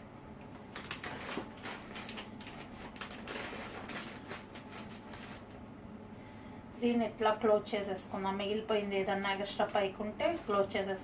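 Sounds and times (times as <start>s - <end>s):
hands rustling on paper: 0.7s - 5.6s.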